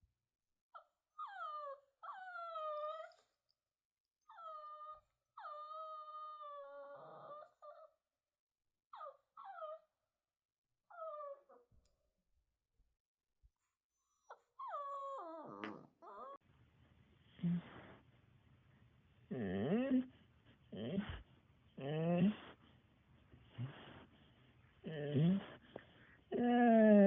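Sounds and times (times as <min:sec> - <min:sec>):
dog whining: 0:00.8 - 0:03.4, 0:04.2 - 0:08.0, 0:08.9 - 0:10.0, 0:10.9 - 0:11.8, 0:13.9 - 0:16.4, 0:19.3 - 0:22.6, 0:23.4 - 0:24.0, 0:24.8 - 0:27.0.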